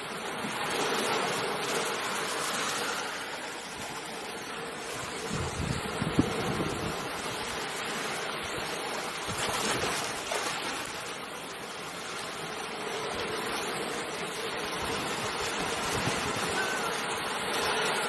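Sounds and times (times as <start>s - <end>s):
ocean waves washing on shore: 0.0s - 18.0s.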